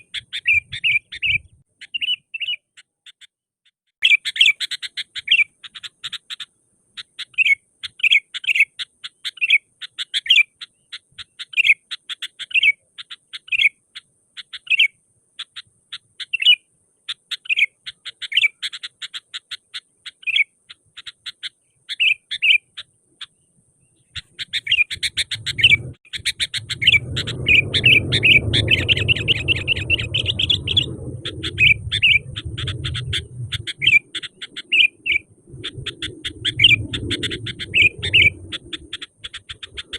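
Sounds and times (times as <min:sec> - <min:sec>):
bulbul chirping: 0:00.0 - 0:03.4, 0:04.0 - 0:39.9
low steady rumble: 0:26.6 - 0:34.0.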